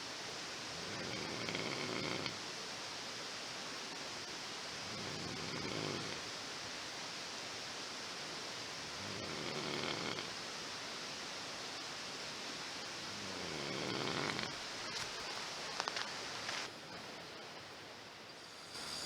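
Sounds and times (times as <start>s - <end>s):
steady hiss: 0.0s - 19.0s
person snoring: 0.9s - 2.4s, 5.0s - 6.2s, 9.0s - 10.3s, 13.4s - 14.5s.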